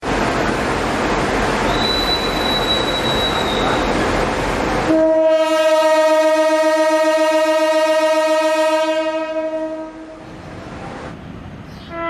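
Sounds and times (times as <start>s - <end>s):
locomotive horn blast: 4.9s - 10.2s.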